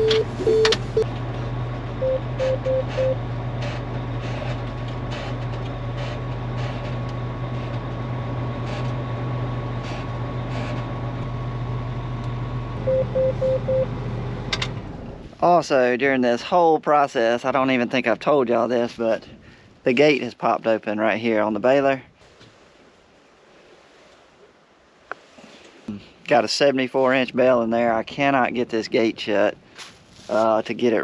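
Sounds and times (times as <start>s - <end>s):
electronic warning beeps: 0.0s - 1.0s, 2.0s - 3.2s, 12.9s - 13.9s
diesel engine running: 0.0s - 15.5s.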